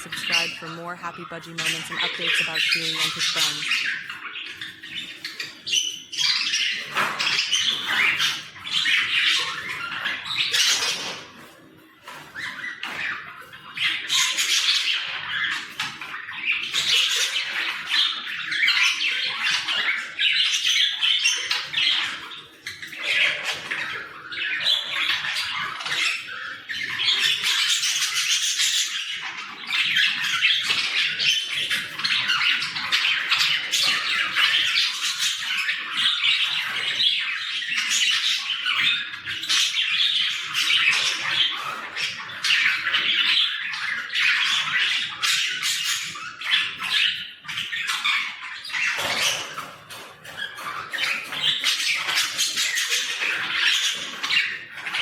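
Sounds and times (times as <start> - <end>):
budgerigars chattering and squawking: 0.0 - 55.0.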